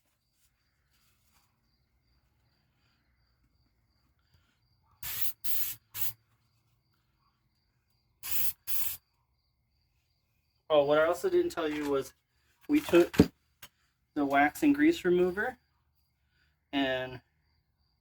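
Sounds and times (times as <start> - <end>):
aerosol can spraying: 5.0 - 6.2, 8.2 - 9.0.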